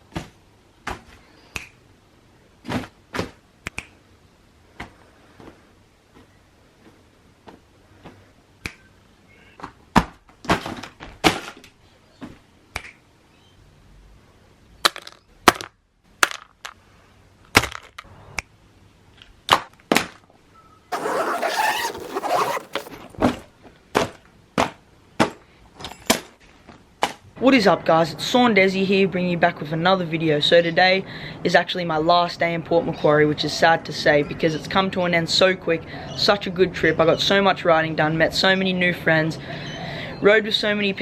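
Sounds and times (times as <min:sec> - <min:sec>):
scooter scraping on concrete: 0:21.0 - 0:23.5.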